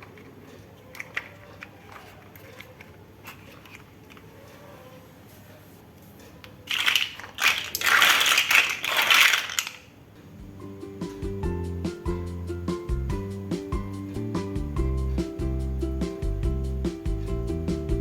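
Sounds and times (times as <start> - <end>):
faint plastic clicks: 0.0 - 4.8
plastic pieces rattling: 0.9 - 4.2, 6.7 - 10.0.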